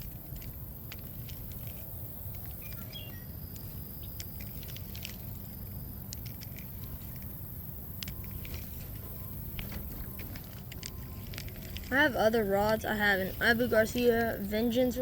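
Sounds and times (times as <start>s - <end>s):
faint high chirps: 2.6s - 3.4s.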